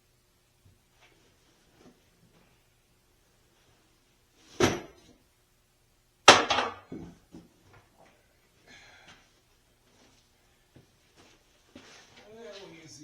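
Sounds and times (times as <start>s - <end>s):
loud wooden knocks: 6.3s - 7.2s.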